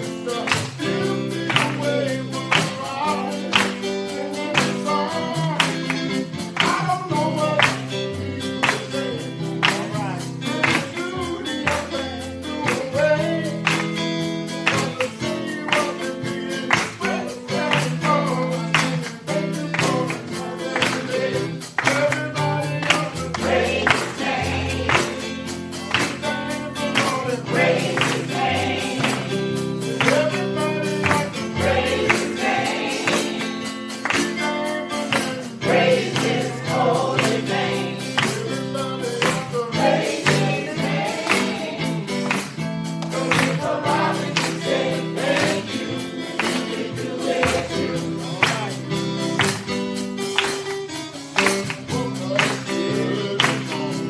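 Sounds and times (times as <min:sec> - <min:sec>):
percussion beat: 0:00.0 - 0:54.0
bass notes: 0:04.1 - 0:50.9
choir singing: 0:20.1 - 0:21.7, 0:23.0 - 0:25.5, 0:26.2 - 0:33.9, 0:35.4 - 0:42.2, 0:43.2 - 0:48.6.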